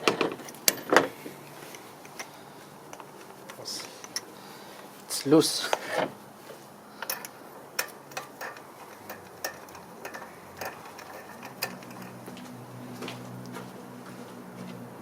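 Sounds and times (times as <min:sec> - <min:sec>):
hand tools clicking and tapping: 0:00.0 - 0:05.0, 0:07.0 - 0:13.8
low steady hum: 0:00.0 - 0:15.0.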